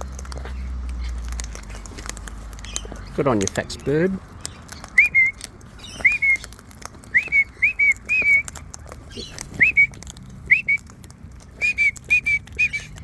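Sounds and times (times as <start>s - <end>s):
faint clicks: 0.0s - 13.0s
short upward whistles: 5.0s - 5.4s, 6.0s - 6.4s, 7.1s - 8.4s, 9.6s - 9.9s, 10.5s - 10.8s, 11.6s - 12.9s.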